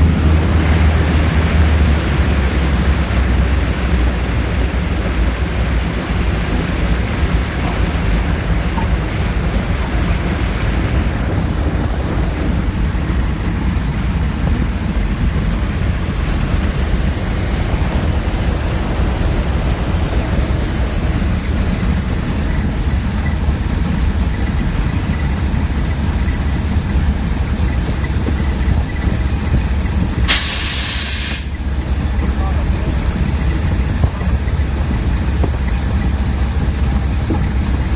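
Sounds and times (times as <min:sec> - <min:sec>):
rushing air: 0:00.0 - 0:35.4
light aircraft engine rumble: 0:00.0 - 0:37.9
short burst of hiss: 0:30.3 - 0:31.5.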